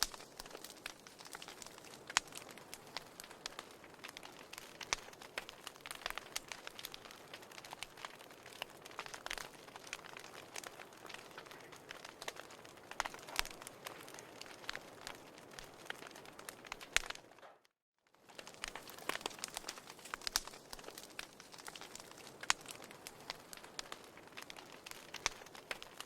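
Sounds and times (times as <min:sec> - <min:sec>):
soft fire hiss: 0:00.0 - 0:17.2, 0:18.3 - 0:26.0
fire crackling and popping: 0:00.0 - 0:26.0.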